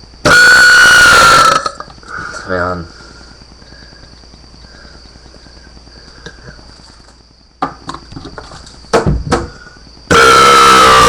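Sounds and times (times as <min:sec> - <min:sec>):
faint room hiss: 0:00.0 - 0:11.0
high-pitched whine: 0:00.0 - 0:11.0
sharp knocks and thumps: 0:07.6 - 0:09.6.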